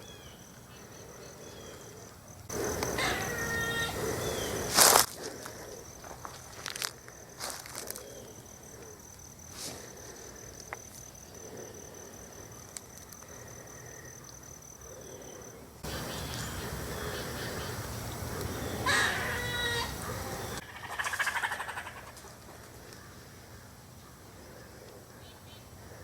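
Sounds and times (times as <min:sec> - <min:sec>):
animal call: 0:02.5 - 0:04.8, 0:15.9 - 0:22.2.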